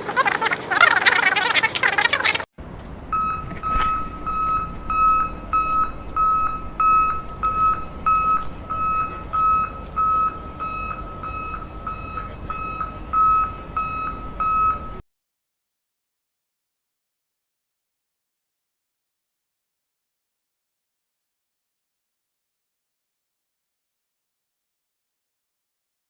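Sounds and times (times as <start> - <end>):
faint low hum: 0.0 - 15.0
electronic beeper short beeps: 3.1 - 15.0.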